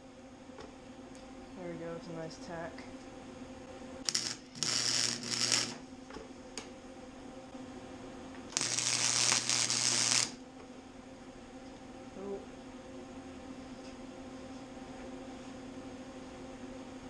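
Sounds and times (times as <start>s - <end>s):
welder low hum: 0.0s - 17.0s
welding arc sizzling: 4.0s - 6.7s, 8.5s - 10.4s.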